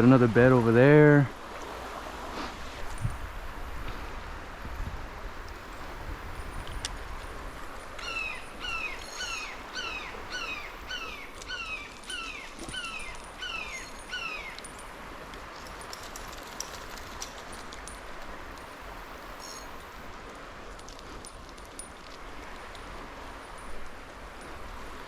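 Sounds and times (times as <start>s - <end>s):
bird calling sharp notes: 8.0s - 14.6s.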